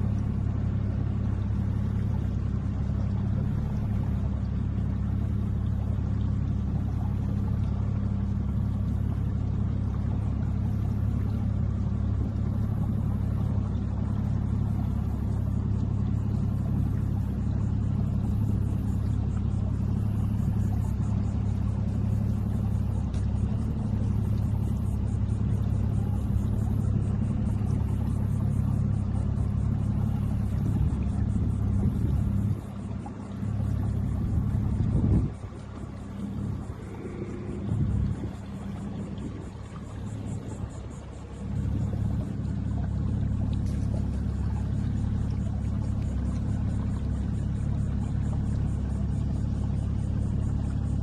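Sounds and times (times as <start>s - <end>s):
low hum with rumble: 0.0s - 51.0s.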